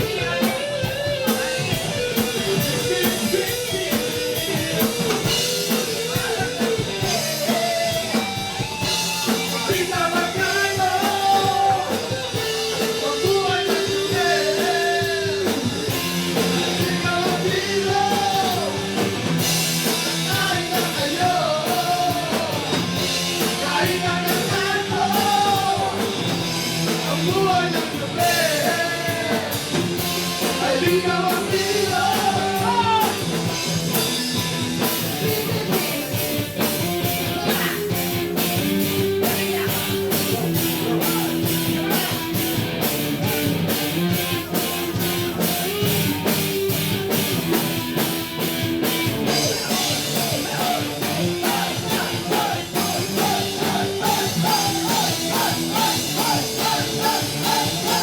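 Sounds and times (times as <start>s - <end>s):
rock band playing: 0.0s - 58.0s
person singing: 9.2s - 19.1s, 19.8s - 33.4s, 34.8s - 36.4s, 37.0s - 42.3s, 49.2s - 58.0s.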